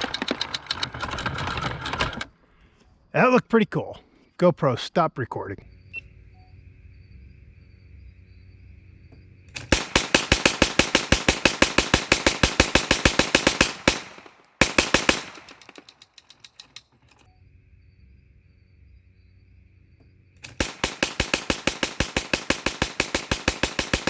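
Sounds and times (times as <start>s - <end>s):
gunfire echo: 9.6s - 16.7s, 20.4s - 24.0s
gatling gun firing bursts: 9.6s - 16.8s, 20.4s - 24.0s.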